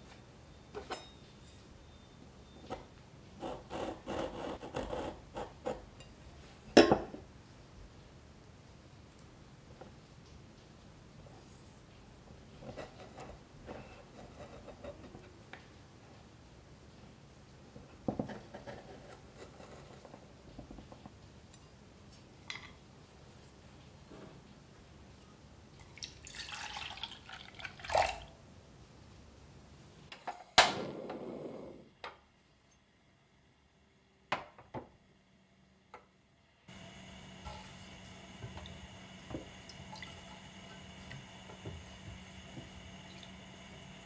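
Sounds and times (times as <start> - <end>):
light tapping and scraping: 17.8 - 22.6.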